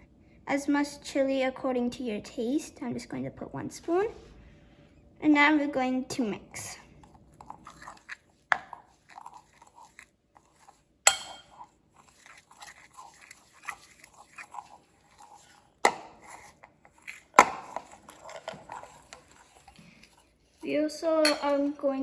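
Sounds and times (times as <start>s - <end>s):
thick paste stirred in bowl: 6.6s - 22.0s.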